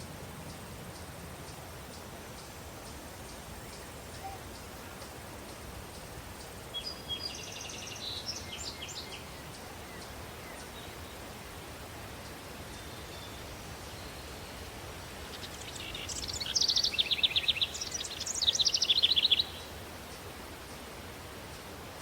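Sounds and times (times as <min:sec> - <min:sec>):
steady breeze: 0:00.0 - 0:22.0
bird song: 0:03.3 - 0:11.4, 0:12.2 - 0:20.8
cricket chirps: 0:12.2 - 0:20.9.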